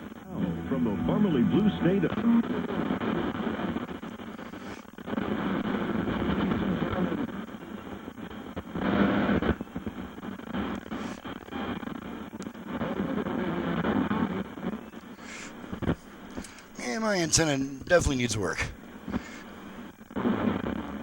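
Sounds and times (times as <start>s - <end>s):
radio static and hiss: 0.0s - 21.0s
faint talk broadcast: 0.2s - 3.9s, 6.1s - 8.2s, 15.7s - 19.2s.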